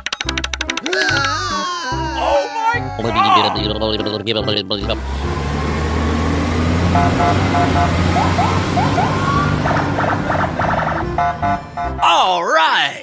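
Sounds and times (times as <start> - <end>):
vehicle engine rumble: 4.6 - 12.0.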